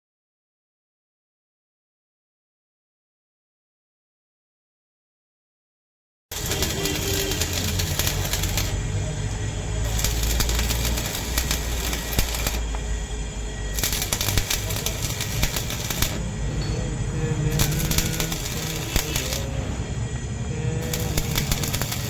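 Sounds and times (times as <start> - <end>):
arc welding crackle and sizzle: 6.3 - 22.0
steady low hum: 6.3 - 22.0.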